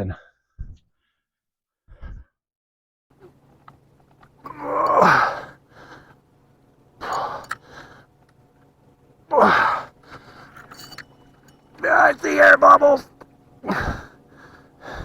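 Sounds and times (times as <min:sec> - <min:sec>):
man straining breathily: 0:04.4 - 0:06.2, 0:07.0 - 0:08.2, 0:09.3 - 0:11.0, 0:13.6 - 0:15.0.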